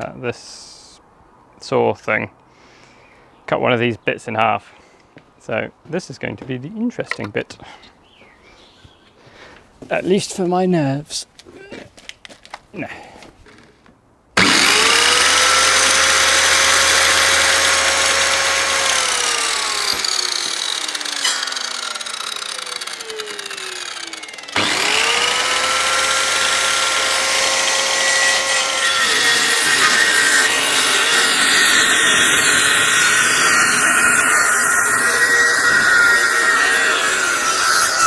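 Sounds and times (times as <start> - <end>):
power saw whining: 14.4 - 38.0
saw cutting wood: 14.4 - 38.0.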